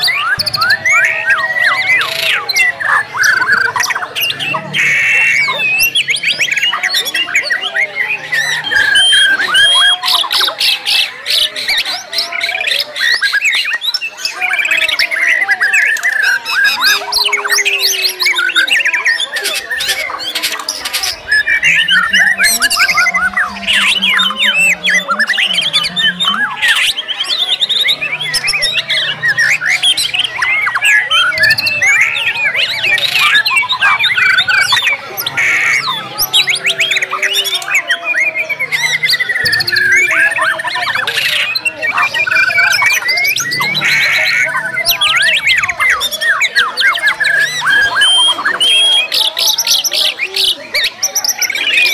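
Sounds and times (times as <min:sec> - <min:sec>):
birds singing with trills and calls: 0:00.0 - 0:51.9.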